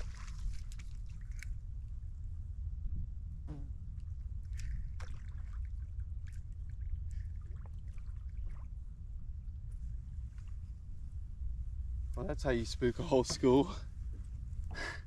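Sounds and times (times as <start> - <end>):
water splashing and trickling: 0.0 - 2.1, 4.0 - 9.4
steady low rumble: 0.0 - 15.0.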